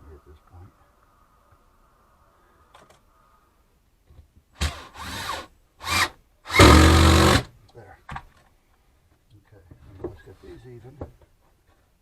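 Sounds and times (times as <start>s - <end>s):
power drill driving screw: 4.6s - 7.5s.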